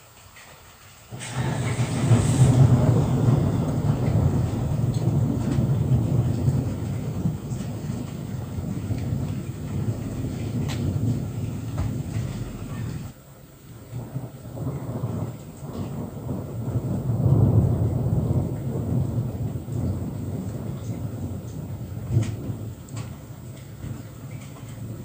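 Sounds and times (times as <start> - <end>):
light rain ticking: 0.0 - 25.0
rolling thunder: 1.1 - 25.0.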